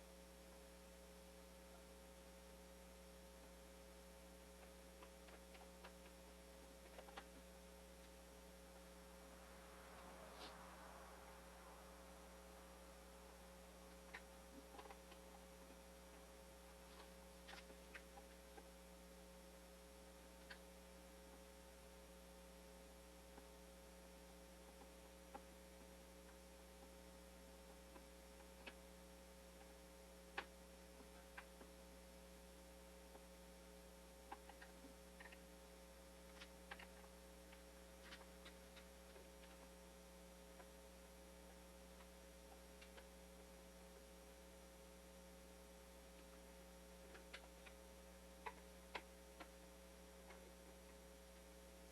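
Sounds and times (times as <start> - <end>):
faint hum: 0.0 - 51.9
faint clicks and taps: 4.5 - 8.2, 36.2 - 39.8, 46.1 - 51.5.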